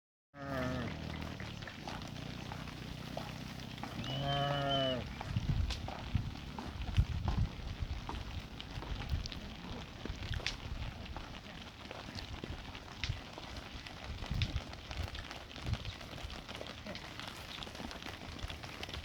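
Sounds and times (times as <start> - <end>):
sheep bleating: 0.4 - 5.2
rustling: 0.4 - 19.0.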